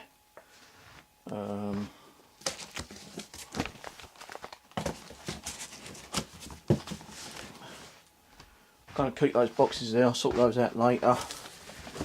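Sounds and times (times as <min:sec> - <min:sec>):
objects knocking and rustling: 0:02.4 - 0:07.6, 0:11.1 - 0:12.0.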